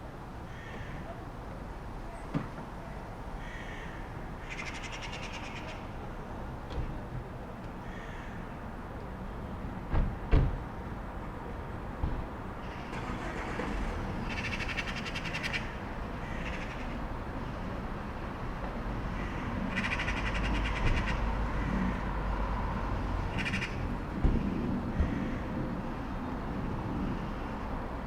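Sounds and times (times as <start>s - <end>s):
distant traffic rumble: 0.0s - 28.0s.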